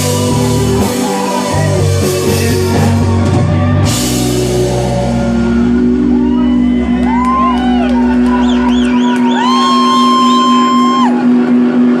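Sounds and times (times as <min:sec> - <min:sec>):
rock band final chord: 0:00.0 - 0:08.7
audience whooping and shouting: 0:00.0 - 0:11.6.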